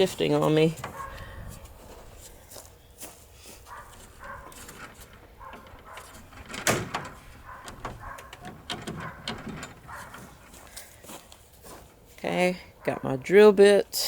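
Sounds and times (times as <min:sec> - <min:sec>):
tools clicking and clattering: 0:03.9 - 0:10.8.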